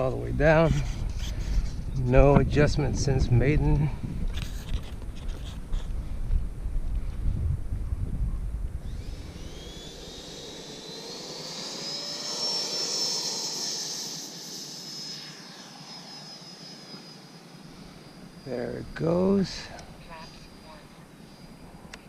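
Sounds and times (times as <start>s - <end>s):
electric ducted fan whine: 0.0s - 22.0s.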